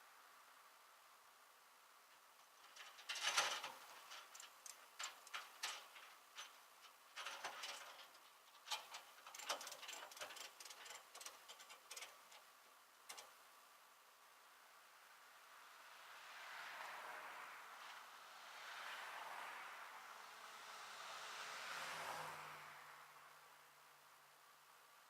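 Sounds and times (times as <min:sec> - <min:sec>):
light clicks and rattles: 0:02.1 - 0:13.4.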